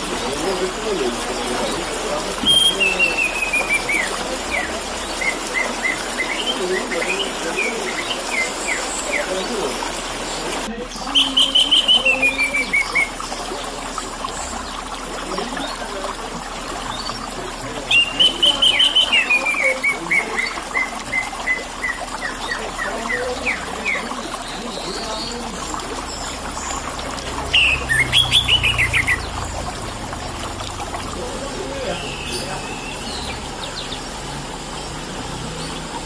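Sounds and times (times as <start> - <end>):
water trickling: 0.0 - 36.0
bird singing whistled notes: 2.4 - 13.2, 17.9 - 29.5, 31.8 - 34.0.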